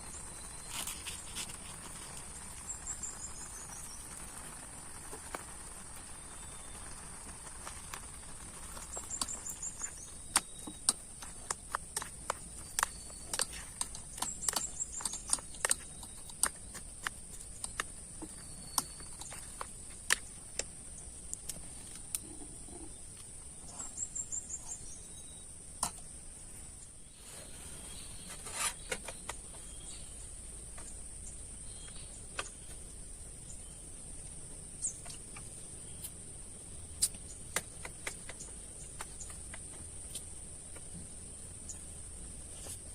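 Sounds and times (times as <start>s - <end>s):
water dripping on tent: 0.0s - 22.2s
night insects droning: 0.0s - 42.9s.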